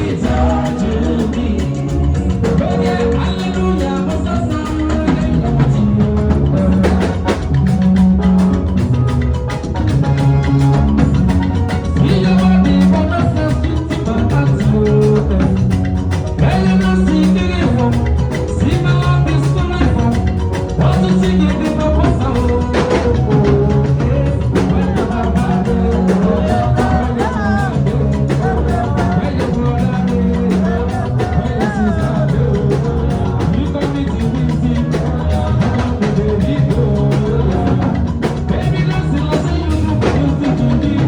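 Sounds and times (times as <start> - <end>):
person singing: 0.0 - 9.5, 10.1 - 41.0
latin dance beat: 0.0 - 41.0
repeating bass line: 0.0 - 41.0.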